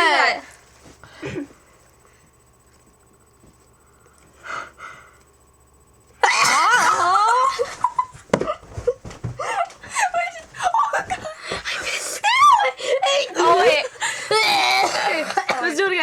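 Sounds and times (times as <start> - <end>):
girl sneezing loudly: 6.2 - 7.1.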